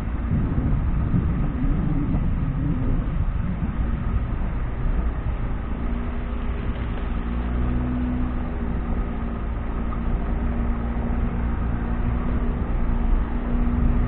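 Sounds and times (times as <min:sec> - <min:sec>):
vehicle engine rumbling off-road: 0:00.0 - 0:14.0.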